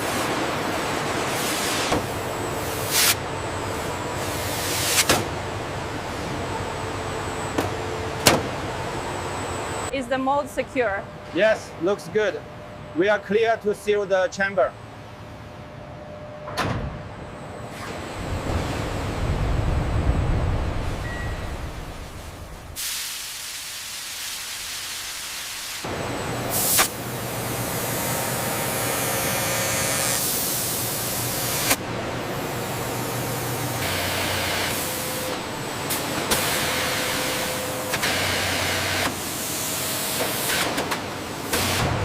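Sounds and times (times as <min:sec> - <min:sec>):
low machine hum: 0:00.0 - 0:22.8, 0:25.8 - 0:40.2
hissing rushing air noise: 0:18.2 - 0:25.9.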